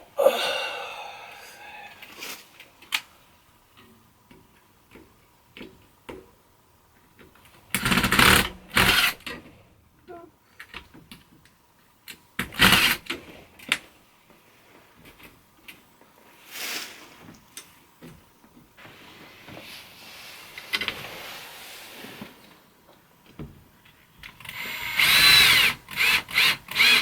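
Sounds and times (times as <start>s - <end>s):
power drill running: 8.2s - 9.2s, 24.5s - 27.0s.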